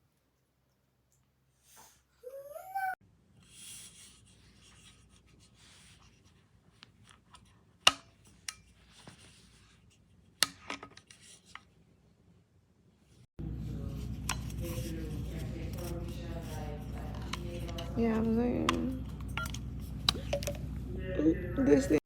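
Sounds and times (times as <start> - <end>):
rubbing and handling noises: 3.3 - 12.0, 12.9 - 20.9.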